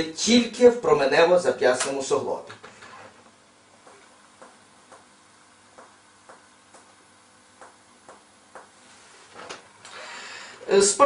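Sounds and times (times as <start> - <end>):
faint finger taps on skin: 5.8 - 6.9, 7.6 - 8.8.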